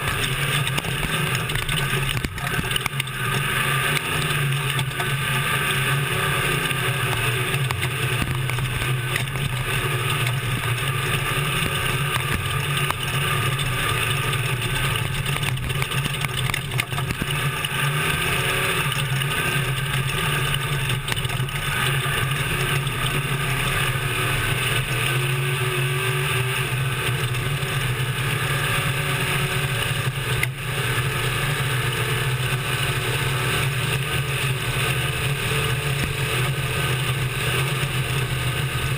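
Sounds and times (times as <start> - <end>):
knocks and rattles: 0.0 - 5.2, 6.6 - 25.3
low truck engine drone: 0.0 - 38.9
road and wind noise: 0.0 - 38.9.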